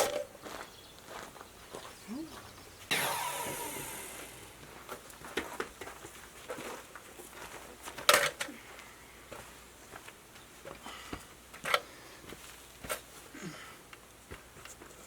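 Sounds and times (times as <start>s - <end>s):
short loud burst: 2.9s - 4.6s
power drill motor winding down: 2.9s - 4.7s.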